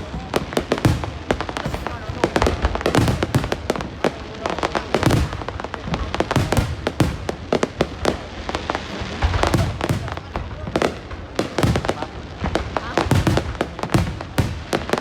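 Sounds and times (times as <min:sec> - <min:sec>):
fireworks booming and crackling: 0:00.0 - 0:15.0.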